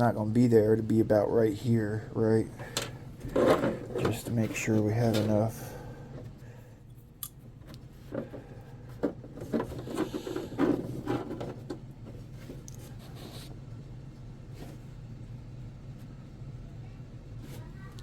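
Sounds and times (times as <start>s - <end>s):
parts clicking and rubbing: 2.6s - 5.5s, 6.1s - 13.6s.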